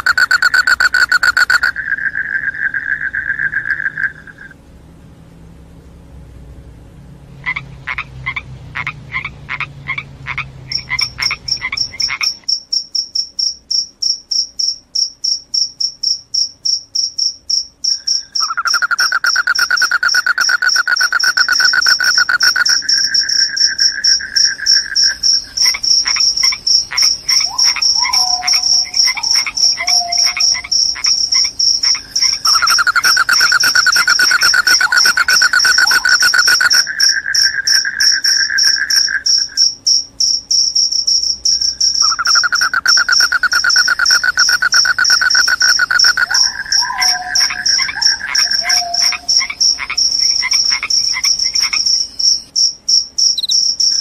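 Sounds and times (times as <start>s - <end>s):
high pulsed cricket chirp: 0.0s - 4.6s, 10.6s - 54.0s
low continuous cricket trill: 0.0s - 4.6s, 7.0s - 54.0s
short pulsed animal calls: 0.0s - 4.6s, 18.2s - 39.5s, 41.8s - 52.5s.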